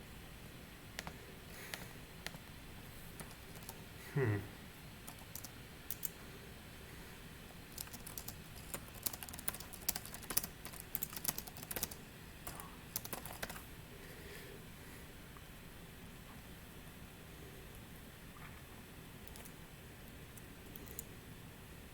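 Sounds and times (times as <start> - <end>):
computer keyboard typing: 3.2 - 3.8, 5.0 - 6.2, 7.7 - 13.6, 19.2 - 19.6, 20.7 - 21.1.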